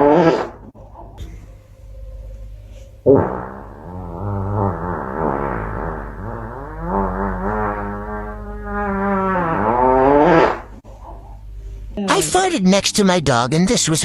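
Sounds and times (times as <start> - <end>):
long buzzy fart sound: 0.0 - 0.7, 3.0 - 10.8.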